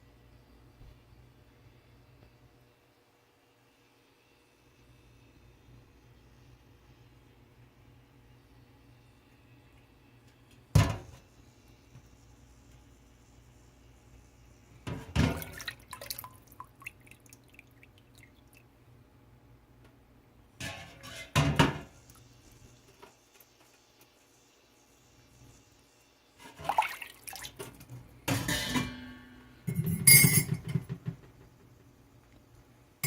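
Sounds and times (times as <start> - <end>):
ceramic clattering on steel pot: 29.7 - 31.0.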